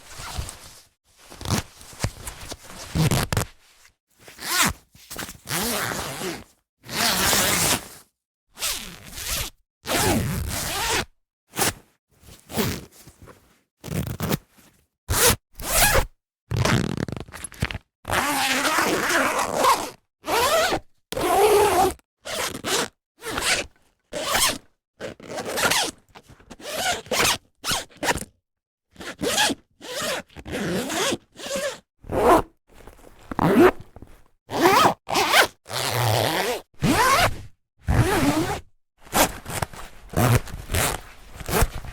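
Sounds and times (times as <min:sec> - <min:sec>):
zippers zipping: 0:01.4 - 0:01.7, 0:02.8 - 0:03.4, 0:04.4 - 0:04.7, 0:05.4 - 0:07.8, 0:08.6 - 0:11.8, 0:12.5 - 0:12.9, 0:13.8 - 0:14.4, 0:15.1 - 0:25.9, 0:29.1 - 0:41.9.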